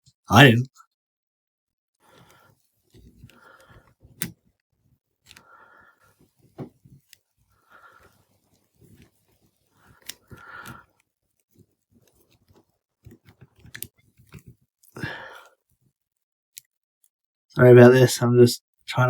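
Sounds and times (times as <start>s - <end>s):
plastic toy parts clicking: 13.0s - 14.4s.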